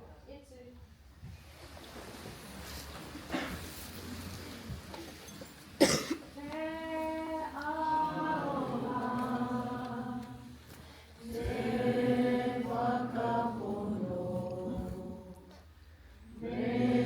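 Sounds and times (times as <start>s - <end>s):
group of voices singing: 6.6s - 17.0s.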